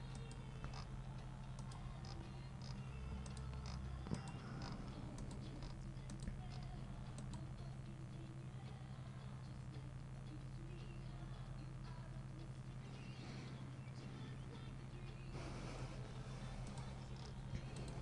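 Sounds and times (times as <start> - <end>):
low electrical hum: 0.0 - 18.0
keyboard and mouse clicks: 1.5 - 7.4, 16.6 - 18.0.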